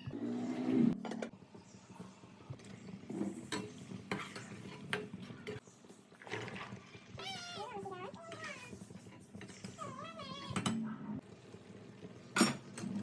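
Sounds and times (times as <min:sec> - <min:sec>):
utensil scraping a cooking pot: 0:03.0 - 0:05.2.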